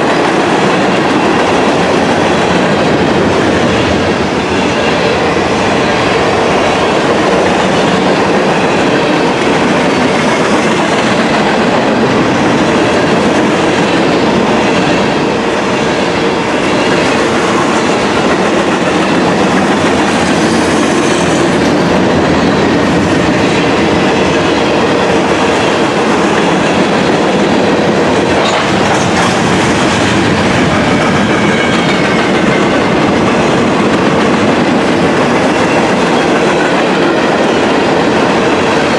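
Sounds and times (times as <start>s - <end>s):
train wheels clattering over rails: 0.0s - 38.9s.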